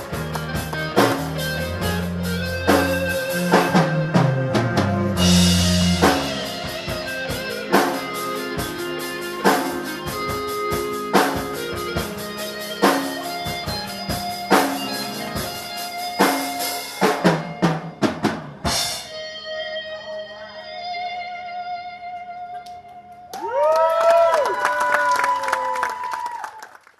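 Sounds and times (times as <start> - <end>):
drum kit with crashing cymbals: 0.0 - 19.2
live rock band playing: 0.0 - 23.3
guitar: 0.0 - 26.1.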